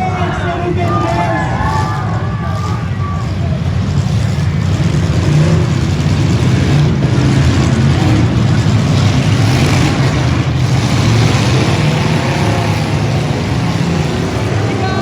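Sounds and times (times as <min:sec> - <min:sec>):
car engines running and revving: 0:00.0 - 0:15.0.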